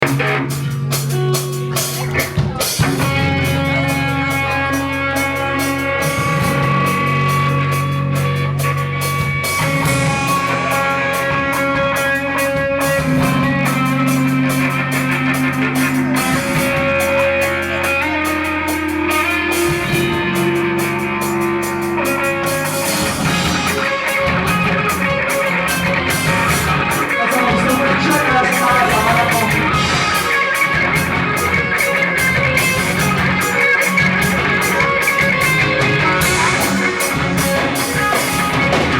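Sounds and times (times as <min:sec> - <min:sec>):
drum kit beat: 0:00.0 - 0:38.9
guitars: 0:00.0 - 0:38.9.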